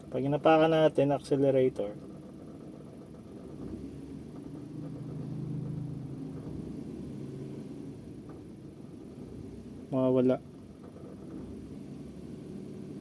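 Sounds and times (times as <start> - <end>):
engine rattle at idle: 0.0 - 13.0.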